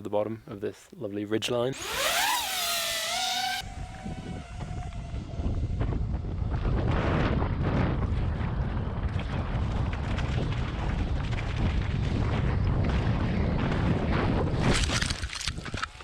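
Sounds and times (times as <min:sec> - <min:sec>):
bike rattling: 0:01.8 - 0:05.2
wind buffeting microphone: 0:01.8 - 0:16.0.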